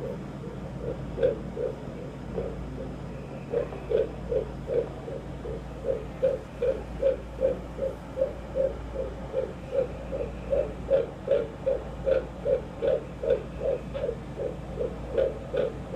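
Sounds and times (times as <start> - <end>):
fetal heartbeat whooshing: 0.0 - 15.9.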